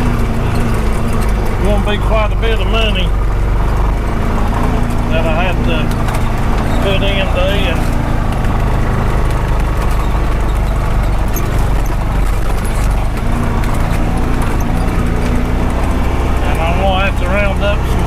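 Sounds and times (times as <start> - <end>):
utility vehicle engine driving: 0.0 - 18.0
small clicks and knocks: 7.8 - 16.2.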